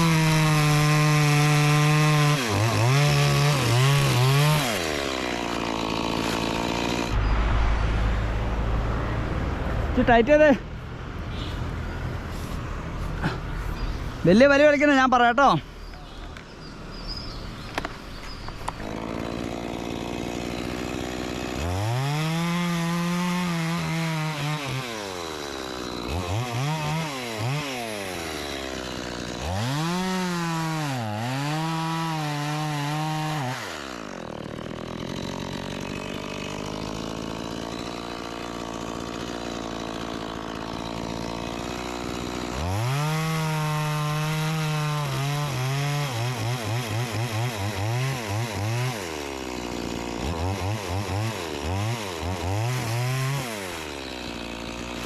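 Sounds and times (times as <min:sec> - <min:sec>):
chainsaw idling and revving: 0:00.0 - 0:07.6, 0:10.0 - 0:10.6, 0:13.0 - 0:15.7, 0:17.2 - 0:55.0.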